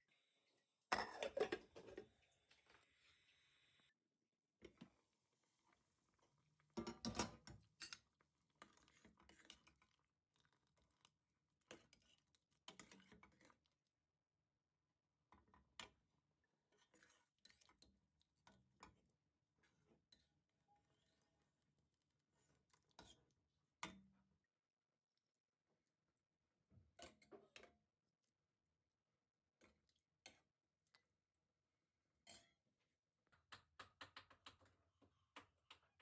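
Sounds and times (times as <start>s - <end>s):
faint irregular clicks and knocks: 33.2s - 36.0s.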